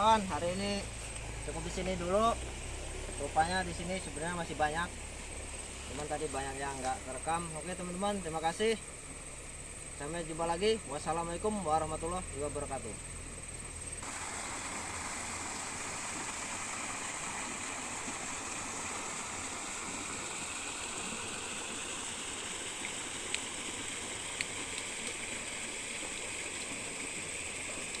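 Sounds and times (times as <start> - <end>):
waterfall rushing: 14.0 - 25.4.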